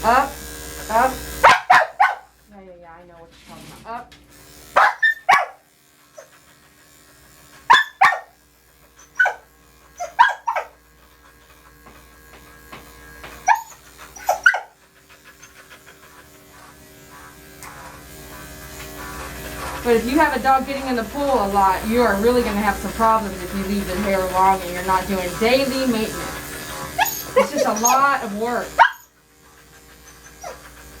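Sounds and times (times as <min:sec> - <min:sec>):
electric dog clippers humming: 0:00.0 - 0:31.0
dog barking: 0:01.4 - 0:02.3, 0:04.8 - 0:05.6, 0:07.7 - 0:08.4, 0:09.0 - 0:10.8, 0:13.4 - 0:14.8, 0:27.0 - 0:28.1, 0:28.7 - 0:29.1.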